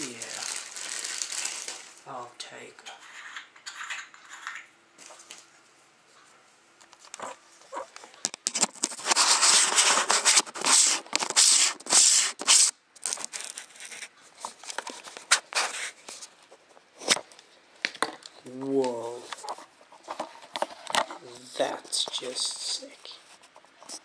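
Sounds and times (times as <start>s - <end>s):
plastic packaging crinkling: 0.0s - 2.1s, 8.0s - 16.3s.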